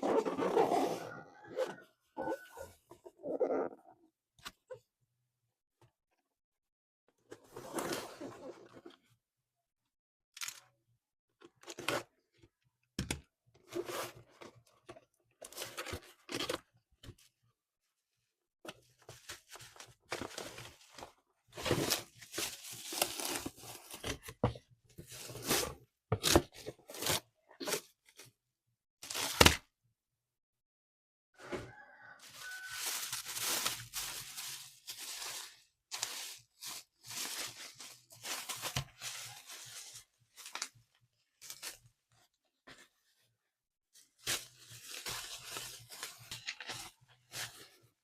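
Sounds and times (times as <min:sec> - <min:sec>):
packaging tearing and crinkling: 0:32.4 - 0:36.6.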